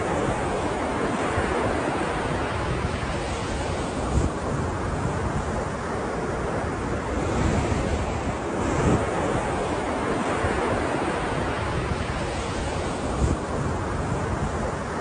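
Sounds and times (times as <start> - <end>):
ocean surf washing: 0.0 - 15.0
wind buffeting microphone: 0.0 - 15.0.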